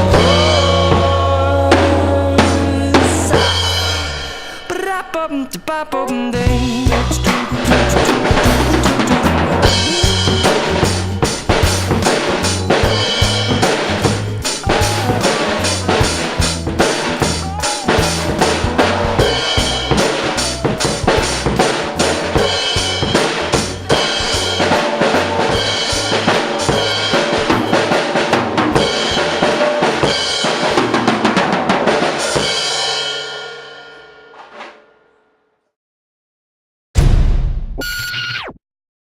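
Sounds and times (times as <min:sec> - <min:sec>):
drum kit playing: 0:00.0 - 0:05.0, 0:06.3 - 0:33.8
pop-reggae backing track: 0:00.0 - 0:30.6.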